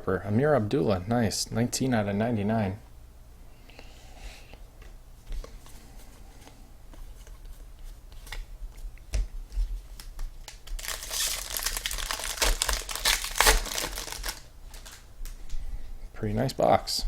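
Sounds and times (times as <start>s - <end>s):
plastic wrapper crinkling: 9.9s - 15.5s.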